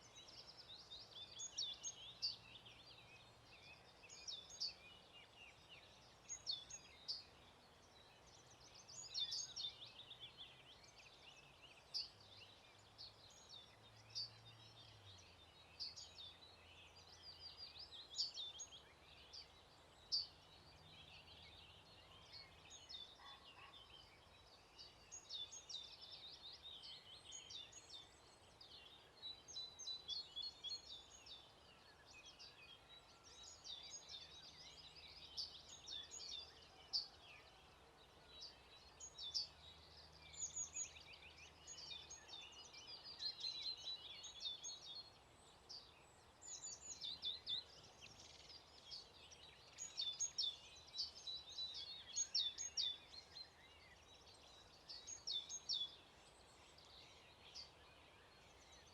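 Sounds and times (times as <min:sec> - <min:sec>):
songbirds singing: 0:00.0 - 0:58.9.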